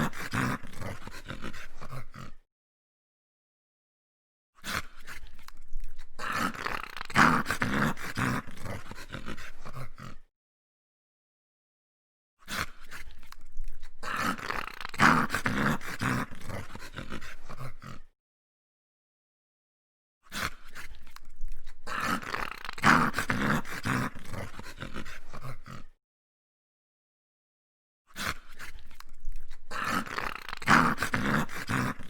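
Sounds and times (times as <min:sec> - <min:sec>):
dog growling and snarling: 0:00.0 - 0:02.5, 0:04.6 - 0:10.3, 0:12.4 - 0:18.2, 0:20.3 - 0:26.0, 0:28.1 - 0:32.0.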